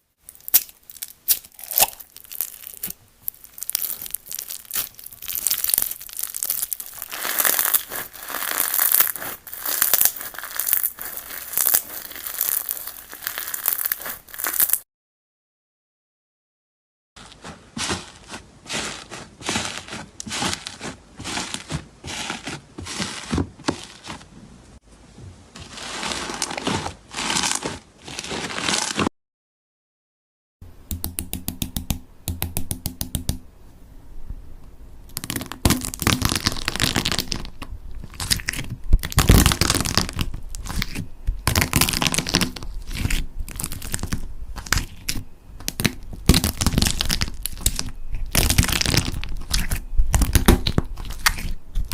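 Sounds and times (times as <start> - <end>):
slime crackling and clicking: 0.3 - 14.8, 35.1 - 51.9.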